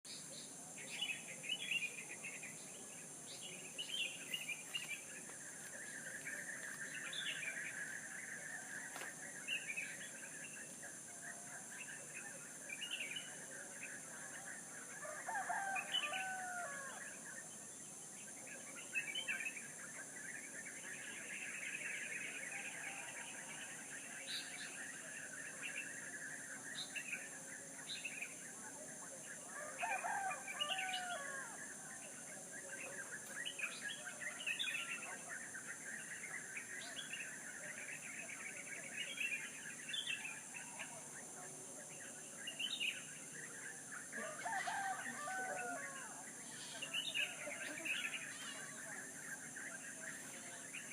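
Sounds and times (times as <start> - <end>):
small birds chirping: 0.0 - 50.9
steady background hiss: 0.1 - 50.9
rooster crowing: 15.0 - 17.0, 29.6 - 31.6, 44.2 - 46.2.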